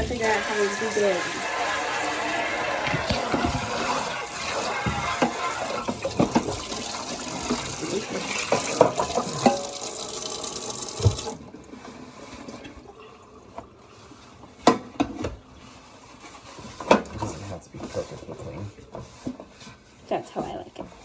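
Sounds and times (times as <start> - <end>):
clatter of rinsed object: 0.0 - 10.2, 14.5 - 21.0
kitchen tap running into sink: 0.0 - 15.6.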